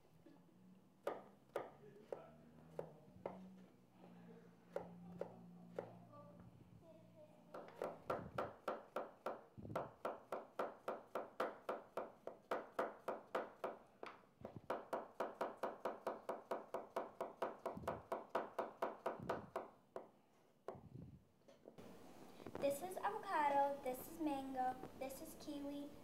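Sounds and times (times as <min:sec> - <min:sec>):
knife chopping on cutting board: 0:07.5 - 0:20.1.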